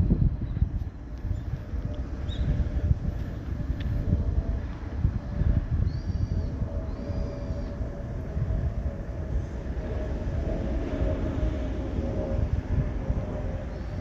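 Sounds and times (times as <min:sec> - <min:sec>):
diesel railcar rumble: 0:06.5 - 0:14.0.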